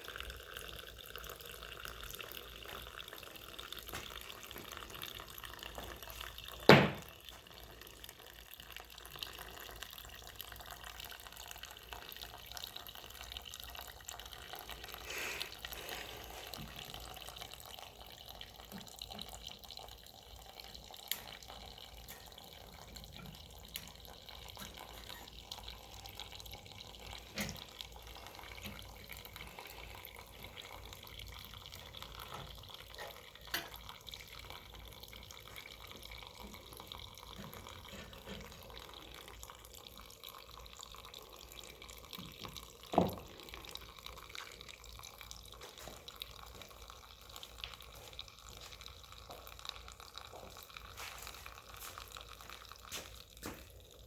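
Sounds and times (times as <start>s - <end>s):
gasoline dripping into a cup: 0.0s - 54.0s
sharp knock: 6.7s - 7.0s.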